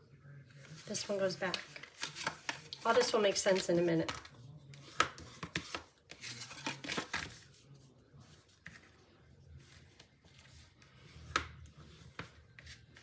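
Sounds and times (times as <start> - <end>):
paper rustling and creasing: 4.8 - 7.6.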